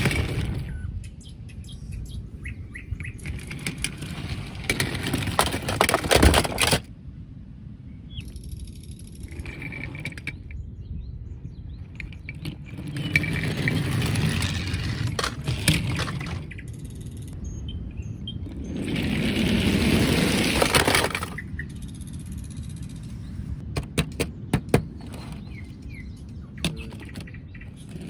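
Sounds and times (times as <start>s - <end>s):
plastic toys clicking and rattling: 3.1s - 6.9s, 12.0s - 17.4s, 19.4s - 23.1s.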